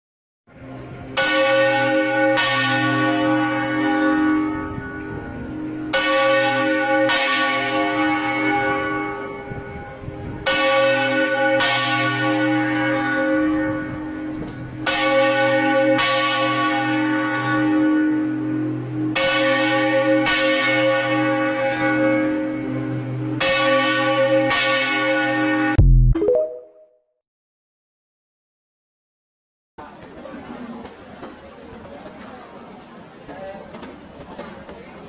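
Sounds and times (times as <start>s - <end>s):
church bells tolling: 0.5s - 25.8s.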